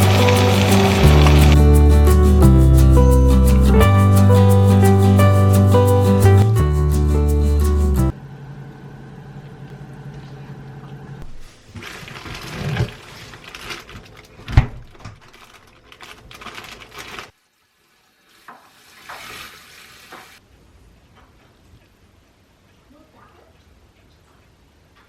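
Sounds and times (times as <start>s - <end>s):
rinsing handling sounds: 0.0s - 2.2s, 9.4s - 17.3s.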